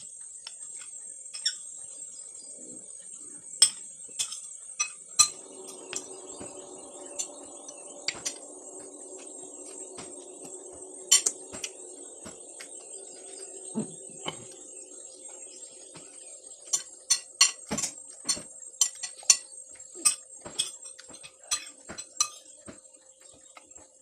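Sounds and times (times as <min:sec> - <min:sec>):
low hum: 0:05.1 - 0:23.8
high-pitched drone: 0:05.2 - 0:17.5
cutlery clinking on a plate: 0:16.7 - 0:22.5.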